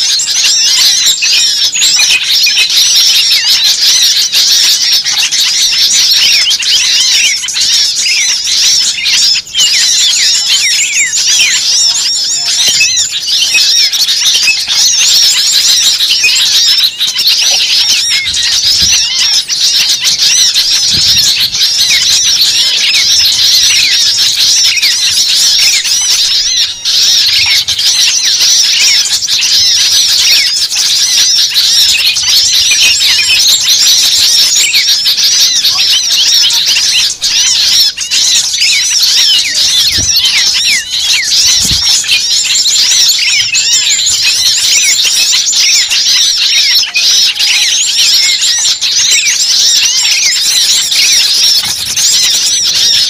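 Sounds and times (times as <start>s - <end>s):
small birds chirping: 0.0s - 53.0s.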